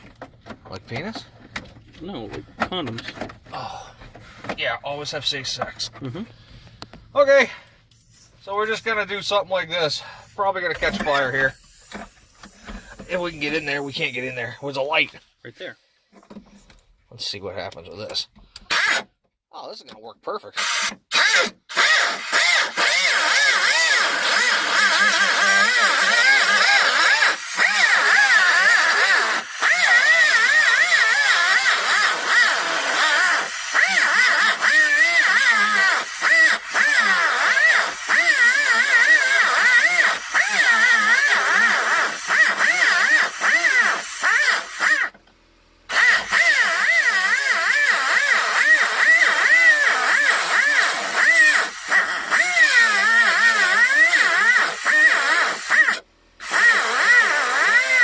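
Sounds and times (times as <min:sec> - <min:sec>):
power cutting tool cutting plastic: 0:10.8 - 0:14.4, 0:18.6 - 0:19.1, 0:20.6 - 0:45.2, 0:45.9 - 0:58.0.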